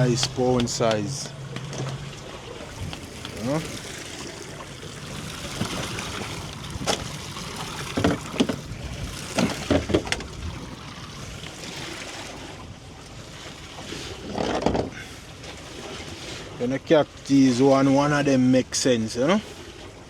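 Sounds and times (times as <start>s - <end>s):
water around boat: 0.0s - 20.0s
wind on microphone: 2.6s - 11.7s
sharp knocks and thumps: 5.4s - 7.2s, 7.8s - 8.7s, 9.3s - 10.3s.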